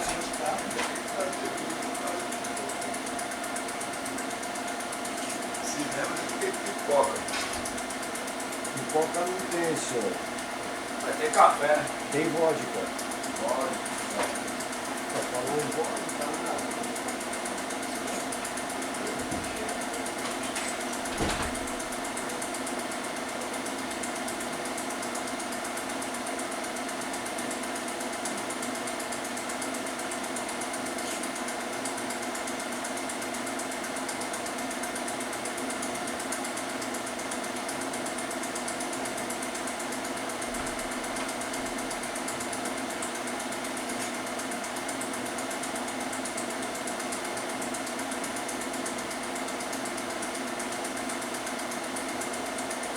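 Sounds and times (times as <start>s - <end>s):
steady hum: 0.0s - 32.4s
film projector whirring and clattering: 0.0s - 52.9s.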